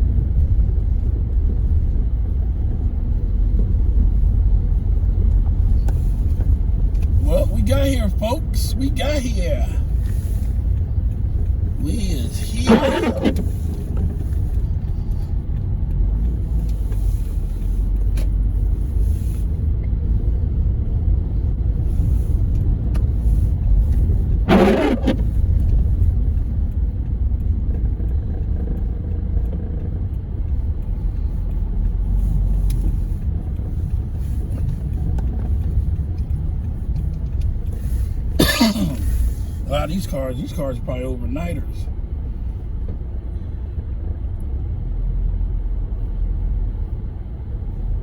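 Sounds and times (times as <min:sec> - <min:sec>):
car engine and tyres rumbling: 0:00.0 - 0:48.0.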